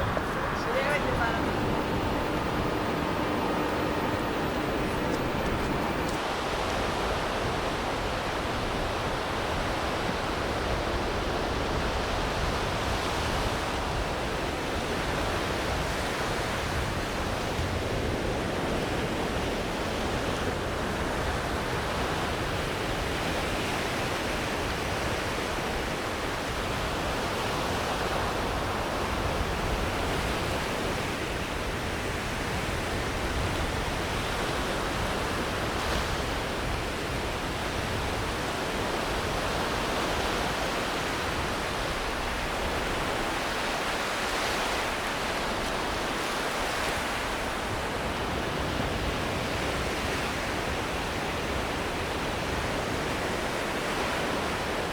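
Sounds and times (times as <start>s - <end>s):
surf washing onto sandy beach: 0.0s - 6.8s.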